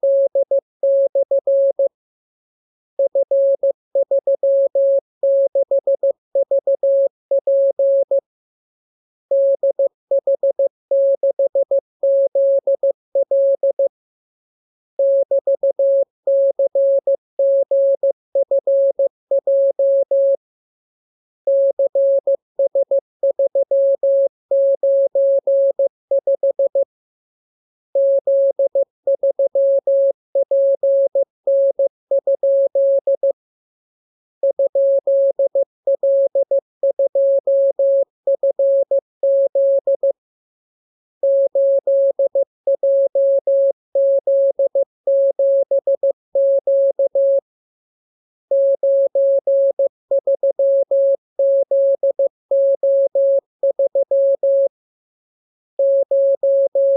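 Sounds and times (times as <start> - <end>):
morse code tone: 34.4 - 40.1, 41.2 - 47.4, 48.5 - 54.7, 55.8 - 56.9.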